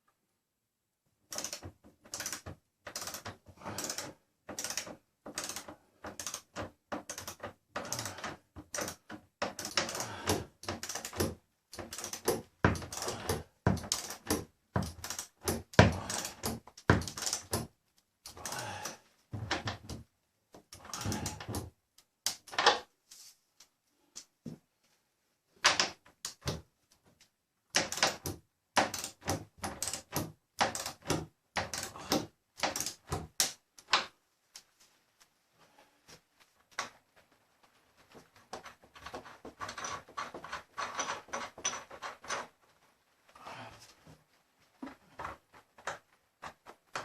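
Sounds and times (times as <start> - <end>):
mechanical clattering and scraping: 38.6 - 42.6.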